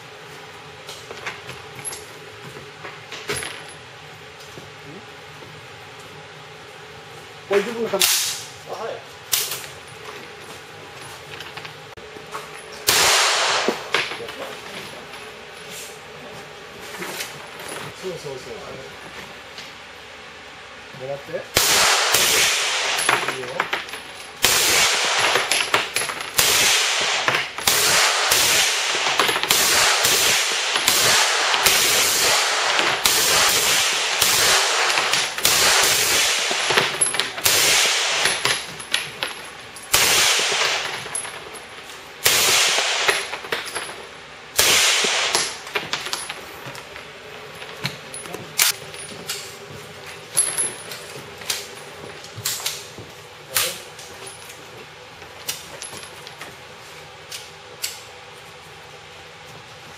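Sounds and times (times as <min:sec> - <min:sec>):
automatic rifle fire: 0:12.9 - 0:14.1, 0:21.6 - 0:23.3, 0:24.4 - 0:25.7, 0:26.4 - 0:38.5, 0:39.9 - 0:41.0, 0:42.2 - 0:43.4, 0:44.6 - 0:45.6.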